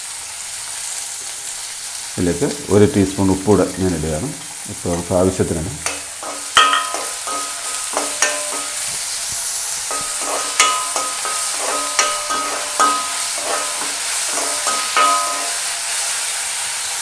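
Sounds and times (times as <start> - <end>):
onion sizzling in oil: 0.0 - 17.0
spoon knocking and scraping pan: 4.1 - 15.9.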